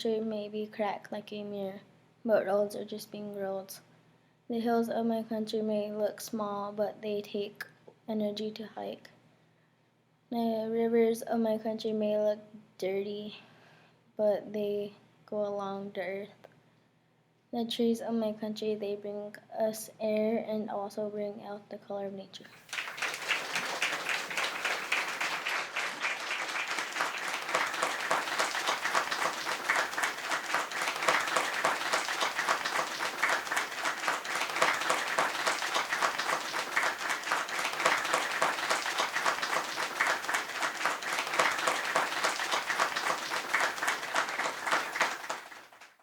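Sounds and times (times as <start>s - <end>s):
audience applauding: 22.5s - 46.0s.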